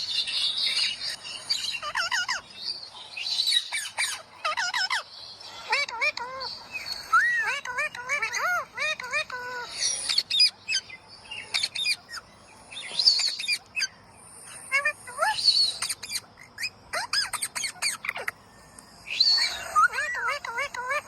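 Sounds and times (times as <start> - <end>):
parrot harsh squawks: 1.7 - 2.4, 3.5 - 10.8, 14.5 - 18.4, 19.1 - 21.0.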